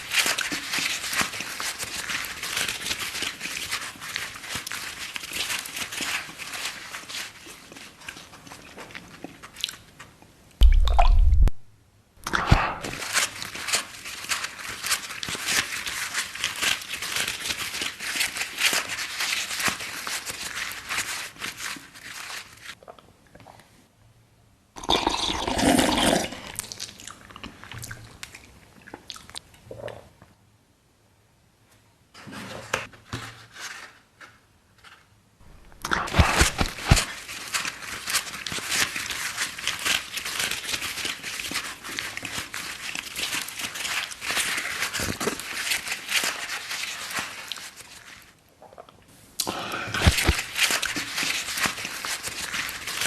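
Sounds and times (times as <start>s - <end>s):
wet crunching and chewing: 0.0s - 10.0s, 25.9s - 30.0s.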